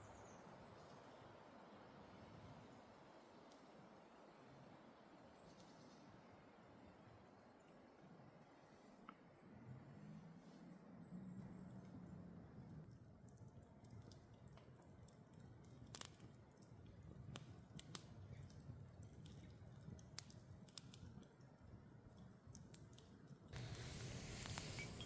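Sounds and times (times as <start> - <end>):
faint clicks and handling noises: 11.4 - 25.0.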